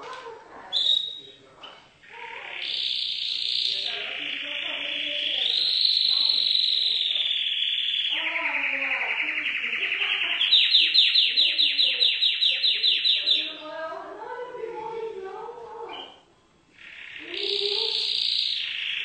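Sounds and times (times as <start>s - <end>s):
canary singing trills: 0.0s - 19.0s.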